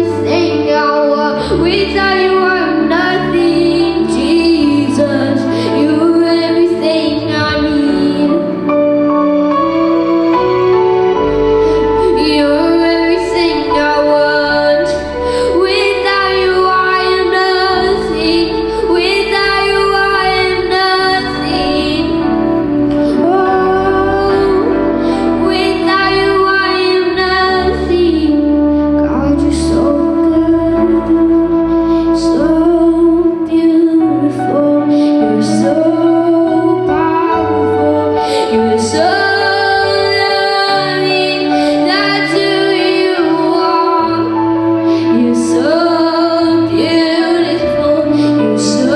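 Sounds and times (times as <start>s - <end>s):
bass: 0.0s - 48.9s
sustained keyboard chords: 0.0s - 48.9s
woman singing slow song: 11.9s - 31.5s, 32.1s - 44.4s, 45.1s - 48.9s.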